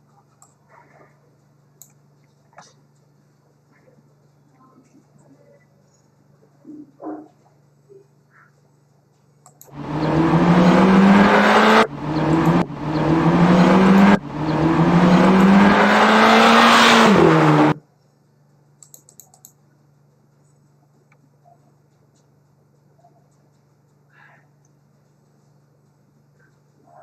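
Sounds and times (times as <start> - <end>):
car engine accelerating hard: 9.7 - 17.8.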